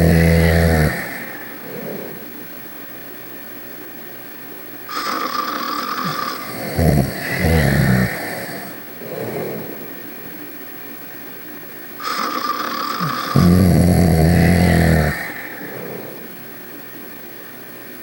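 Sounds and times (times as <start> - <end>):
deep rumbling snore: 0.0 - 2.5, 4.9 - 10.4, 12.2 - 16.6
breathy breath: 0.0 - 2.6, 4.9 - 10.6, 12.0 - 16.7.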